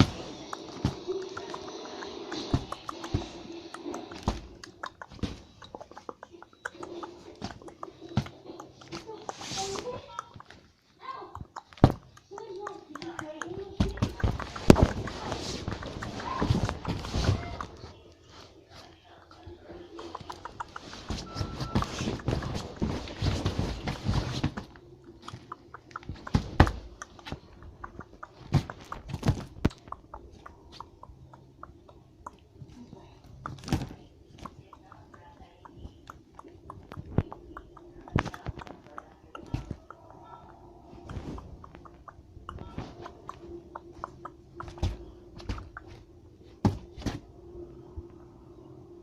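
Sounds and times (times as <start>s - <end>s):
hare clicks and soft thumps: 0.0s - 18.0s, 20.0s - 47.3s
soft thumps: 41.0s - 47.3s.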